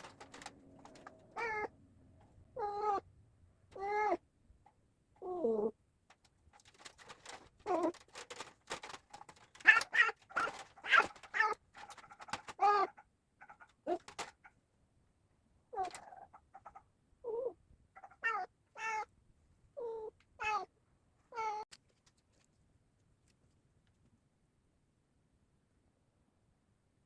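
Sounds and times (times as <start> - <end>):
sharp clicks and rattles: 0.0 - 1.6, 6.1 - 14.6
cat meowing: 1.3 - 1.7, 2.6 - 3.0, 3.7 - 4.2, 9.6 - 11.6, 12.5 - 13.0, 17.2 - 19.1, 19.8 - 20.7, 21.3 - 21.6.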